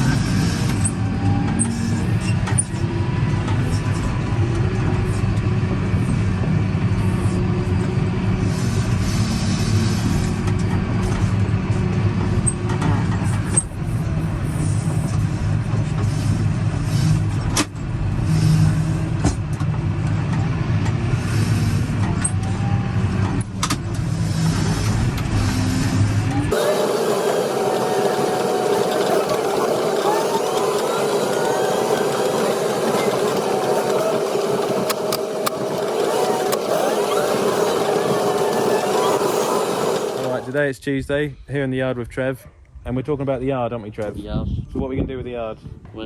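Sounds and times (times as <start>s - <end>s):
tractor engine running under load: 0.0s - 40.6s.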